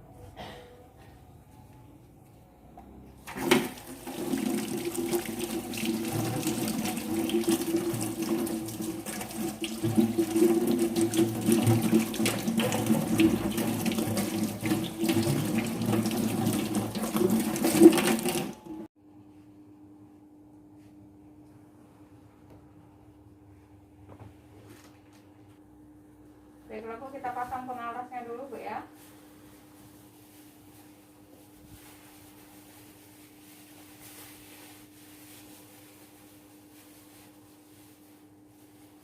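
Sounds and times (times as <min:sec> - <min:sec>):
water running from tap into sink: 0:03.3 - 0:18.9
water splash: 0:03.3 - 0:18.9.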